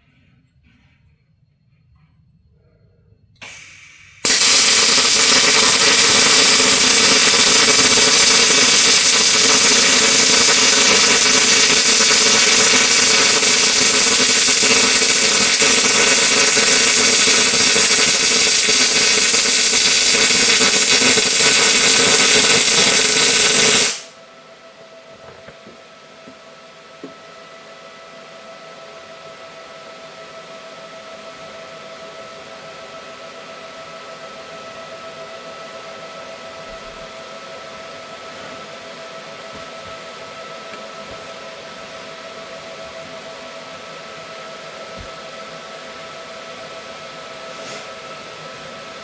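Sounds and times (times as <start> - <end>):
welding arc hissing: 3.4 - 24.1.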